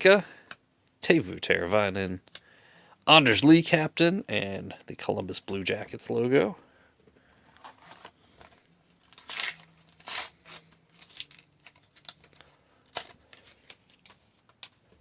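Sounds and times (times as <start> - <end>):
wrapper crinkling and tearing: 7.6 - 14.8.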